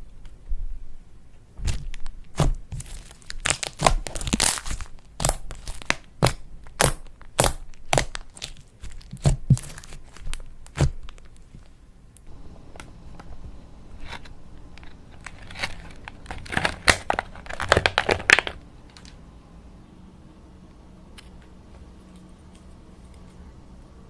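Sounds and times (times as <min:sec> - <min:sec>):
slime crackling and popping: 0:01.6 - 0:11.5, 0:14.8 - 0:18.6.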